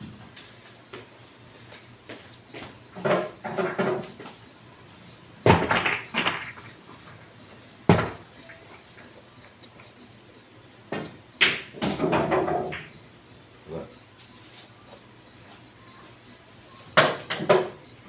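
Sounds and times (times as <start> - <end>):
cue striking billiard ball: 5.5 - 6.6, 10.9 - 12.9
billiard balls knocking together: 5.5 - 6.7, 10.9 - 12.9
billiard balls rattling: 5.5 - 6.8.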